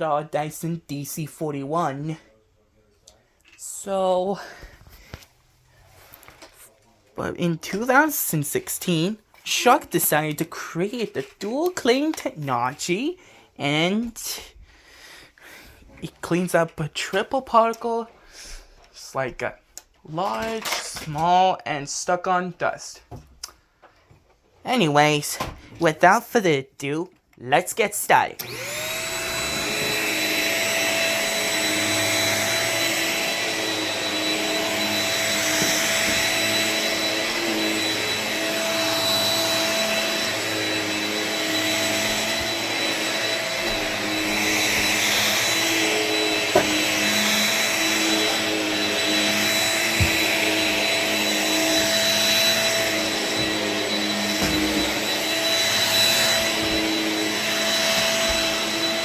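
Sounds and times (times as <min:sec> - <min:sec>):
vacuum cleaner whining: 0:28.2 - 0:59.0.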